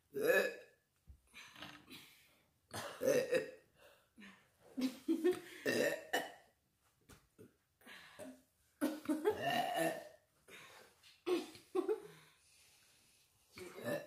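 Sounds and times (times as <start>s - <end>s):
children burping: 2.7s - 3.6s, 9.3s - 10.2s.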